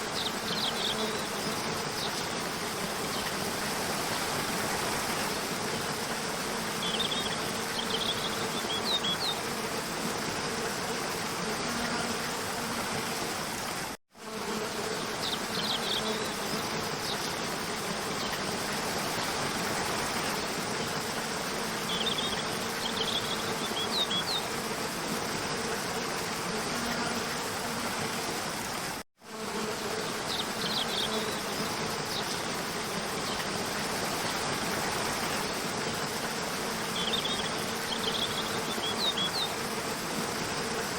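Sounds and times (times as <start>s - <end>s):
stream water splashing over rocks: 2.0s - 6.5s.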